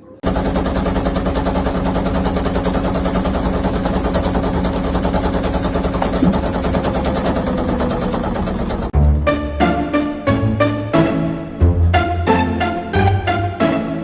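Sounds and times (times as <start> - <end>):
rapid steady rattle: 0.2 - 9.0.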